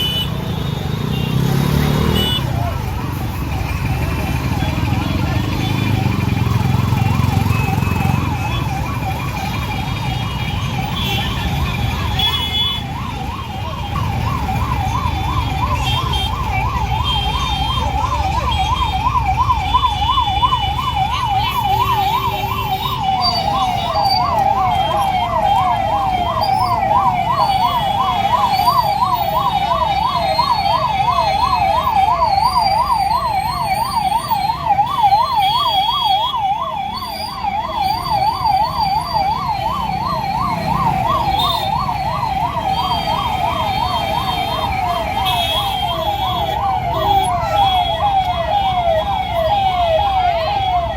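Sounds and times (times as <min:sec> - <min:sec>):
ambulance siren wailing: 0:00.0 - 0:50.9
second siren: 0:00.0 - 0:50.9
traffic rumble: 0:00.0 - 0:50.9.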